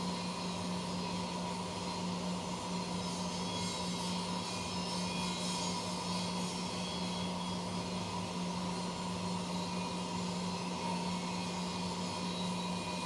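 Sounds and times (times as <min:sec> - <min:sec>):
machine running with low hum: 0:00.0 - 0:13.0.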